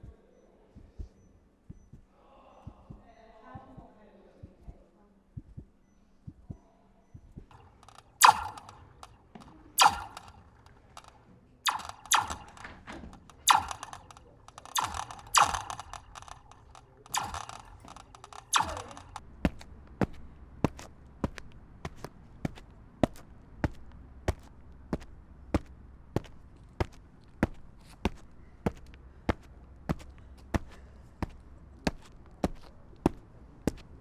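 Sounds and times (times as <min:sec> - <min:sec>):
loud sharp knocks: 0:07.5 - 0:11.1, 0:11.7 - 0:20.2.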